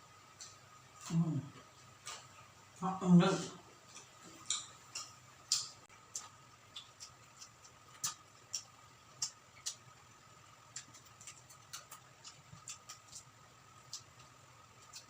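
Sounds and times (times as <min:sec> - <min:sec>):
chewing crispy food: 0:03.8 - 0:15.0.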